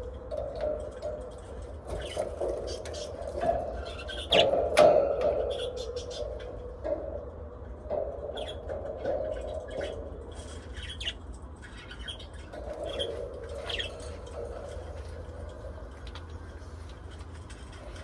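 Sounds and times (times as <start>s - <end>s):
steady low hum: 0.0s - 18.0s
small parrots chirping: 9.7s - 15.0s.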